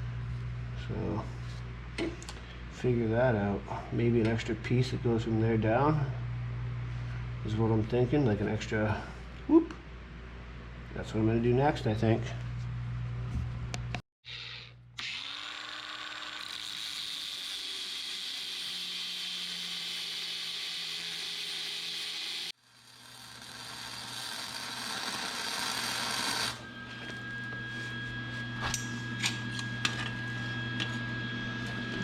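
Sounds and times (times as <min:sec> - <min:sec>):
angle grinder on steel: 0:14.3 - 0:26.7.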